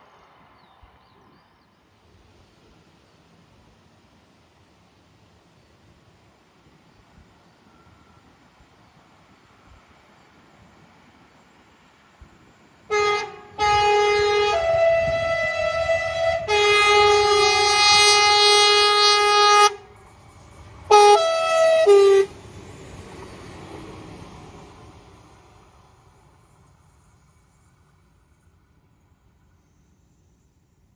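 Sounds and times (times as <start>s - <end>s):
train rumbling: 0.0s - 30.9s
two-tone train horn: 12.9s - 20.0s, 20.9s - 22.4s.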